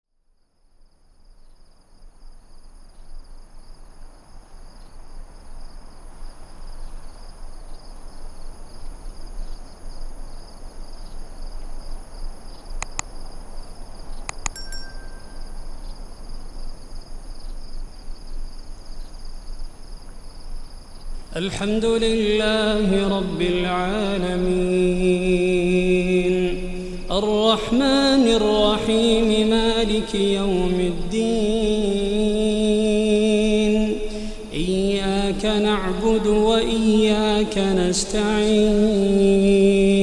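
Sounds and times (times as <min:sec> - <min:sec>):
high insect drone: 0:00.3 - 0:40.0
chimes ringing: 0:14.3 - 0:15.7.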